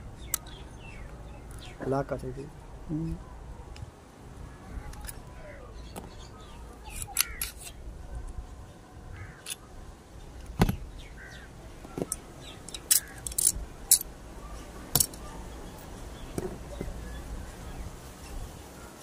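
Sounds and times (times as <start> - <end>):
metallic clicks of pistol parts: 6.9 - 7.8, 12.1 - 14.1, 15.0 - 15.2.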